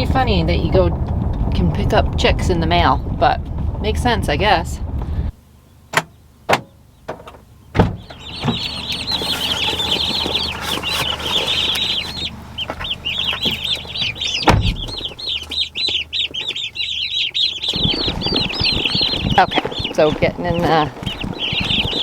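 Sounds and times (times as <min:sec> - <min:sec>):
turkey poults peeping: 0:05.5 - 0:22.0
knocks: 0:14.4 - 0:16.6.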